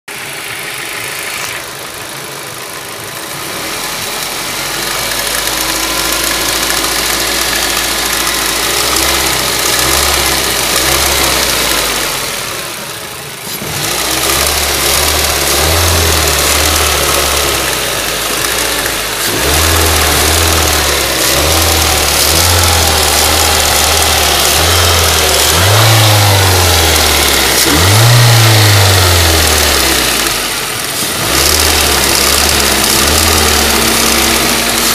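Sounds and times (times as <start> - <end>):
car engine running and revving: 0.1 - 34.9
engine knock: 31.1 - 34.9.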